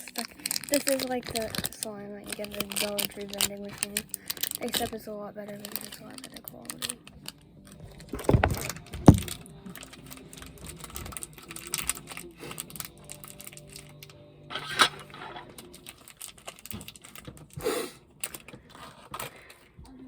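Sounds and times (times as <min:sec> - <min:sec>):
plastic containers clicking and knocking: 0:00.0 - 0:14.1, 0:14.7 - 0:19.9.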